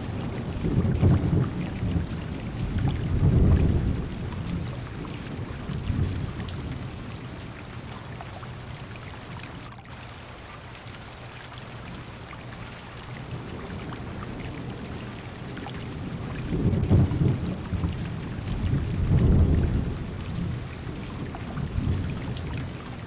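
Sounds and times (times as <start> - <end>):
thunder rumbling: 0.0 - 7.8, 13.2 - 23.0
heavy rain drumming on car: 0.0 - 10.5, 11.1 - 23.0.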